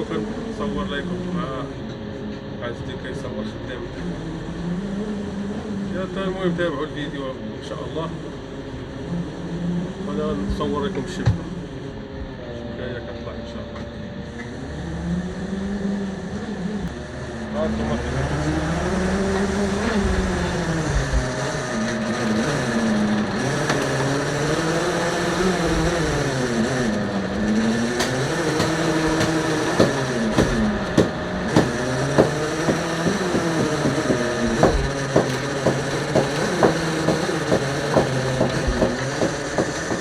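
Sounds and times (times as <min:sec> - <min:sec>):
boat motor running: 0:00.0 - 0:40.0
sharp knocks: 0:20.9 - 0:40.0.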